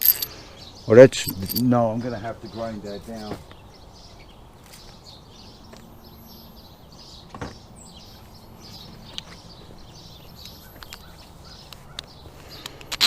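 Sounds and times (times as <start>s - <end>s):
clicks of small parts handled: 0.0s - 0.3s, 1.2s - 1.6s.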